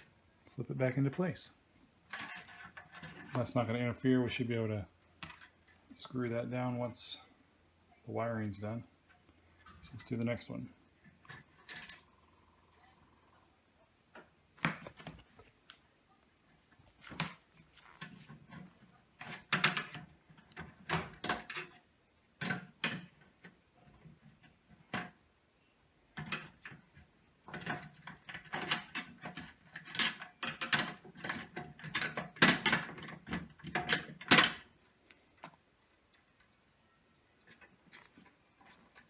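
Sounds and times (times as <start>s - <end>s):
plastic and metal parts scraping: 2.0s - 3.7s, 5.2s - 6.2s, 11.0s - 12.1s, 16.6s - 25.2s, 26.1s - 36.6s, 37.4s - 39.0s
light fixture parts clicking: 27.5s - 35.2s.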